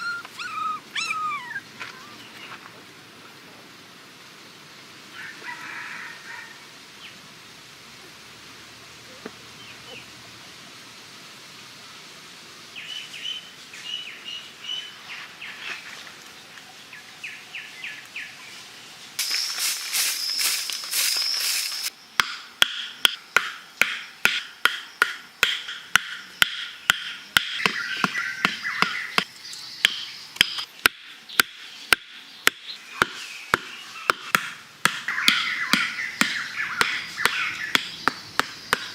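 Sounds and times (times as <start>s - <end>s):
sharp knocks: 22.2s - 38.9s
bird-like chirping: 22.9s - 34.3s, 35.0s - 38.9s.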